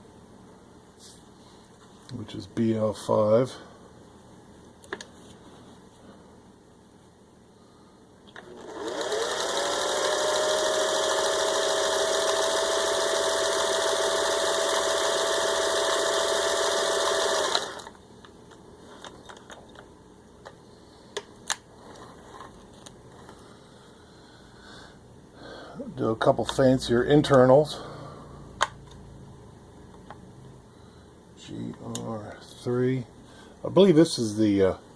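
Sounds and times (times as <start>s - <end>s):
sewing machine running: 8.4s - 18.0s.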